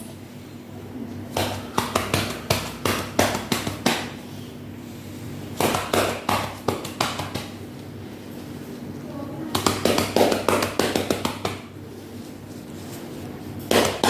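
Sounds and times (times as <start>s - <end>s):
hands patting on a back: 5.6s - 7.6s, 9.6s - 11.7s.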